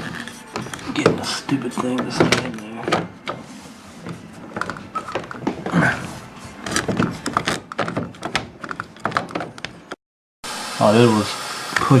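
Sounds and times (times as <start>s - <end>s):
plastic knocks and clicks: 6.7s - 10.0s.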